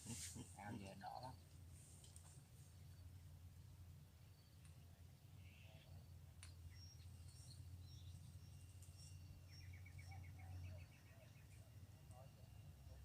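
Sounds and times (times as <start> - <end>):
faint bird chirps: 0.5 - 1.5, 4.2 - 13.0.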